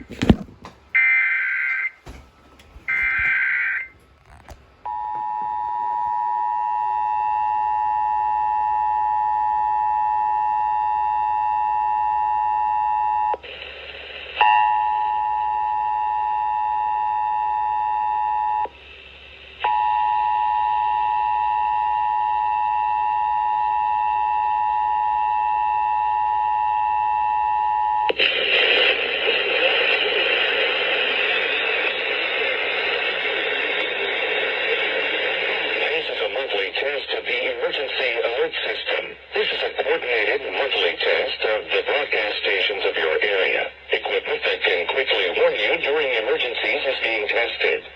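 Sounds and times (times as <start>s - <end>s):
loud static: 0.0s - 1.1s, 2.8s - 4.8s, 28.1s - 47.9s.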